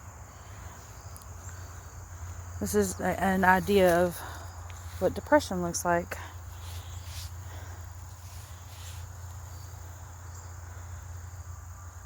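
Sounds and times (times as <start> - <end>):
crickets trilling: 0.0 - 12.0
soft rustles: 6.4 - 9.8.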